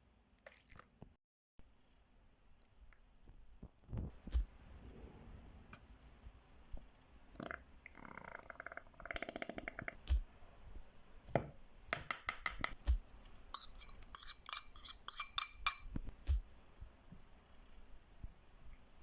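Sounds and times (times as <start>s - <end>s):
utensils clinking against dishes: 13.6s - 15.9s.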